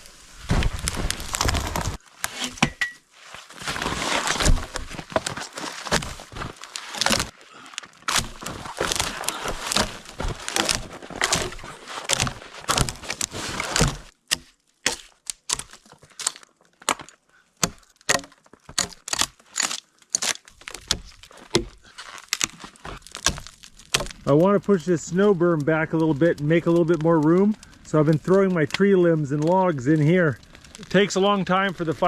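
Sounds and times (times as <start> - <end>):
dry wood cracking: 0.0 - 2.6, 3.2 - 32.0.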